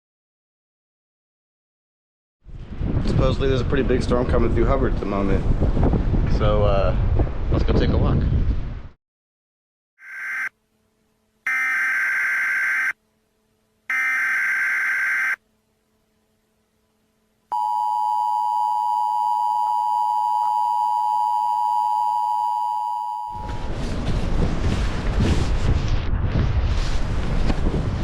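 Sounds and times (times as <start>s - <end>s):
screeching digital data bursts: 10.0s - 10.5s, 13.9s - 15.4s
two-tone attention signal: 10.0s - 10.5s, 11.5s - 12.9s, 13.9s - 15.4s.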